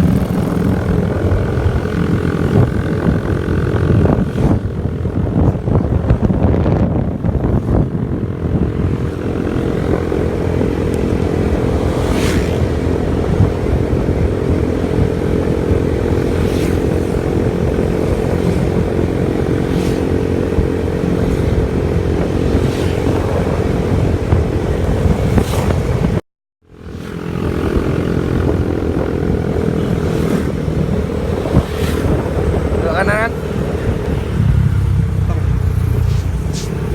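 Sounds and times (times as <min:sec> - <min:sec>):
road and wind rumble: 0:00.0 - 0:36.9
vehicle engine running: 0:26.8 - 0:36.9.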